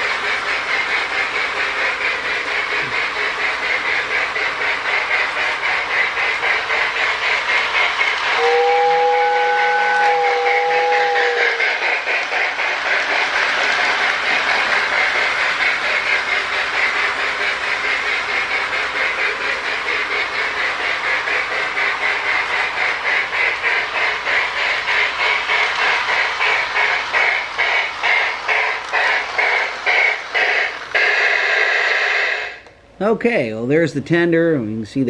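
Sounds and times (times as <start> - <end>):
toy steam locomotive chuffing: 0.0 - 32.7.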